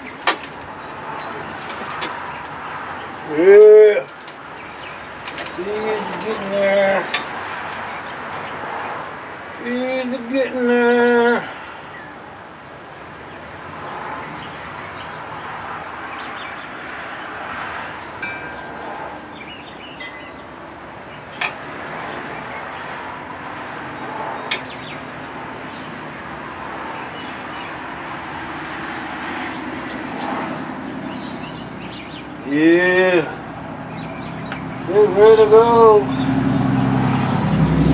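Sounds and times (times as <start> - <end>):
short ringing tones: 18.2 - 19.2.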